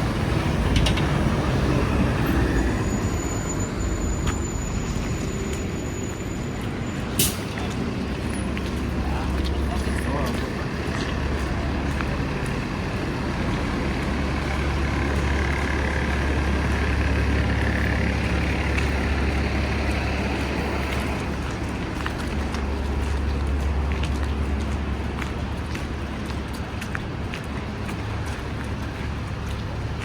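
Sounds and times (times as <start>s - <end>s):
large vehicle engine rumble: 0.0s - 30.0s.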